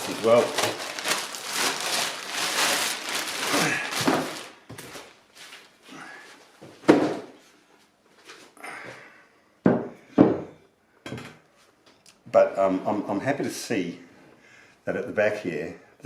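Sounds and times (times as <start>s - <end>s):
packaging rustling: 0.0s - 5.8s
knocks and thuds on workbench: 6.8s - 7.3s, 9.6s - 11.4s.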